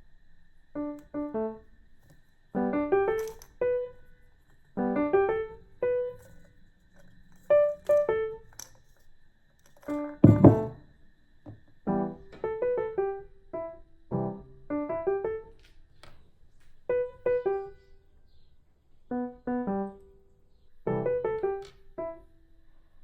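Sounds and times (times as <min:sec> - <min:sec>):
simple instrumental melody: 0:10.1 - 0:10.8.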